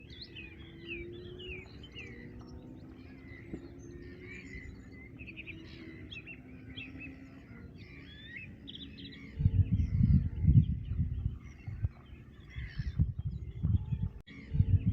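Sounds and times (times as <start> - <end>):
small birds chirping: 0.0 - 14.9
faint low tones: 9.1 - 14.9
loud low rumble: 9.2 - 12.0.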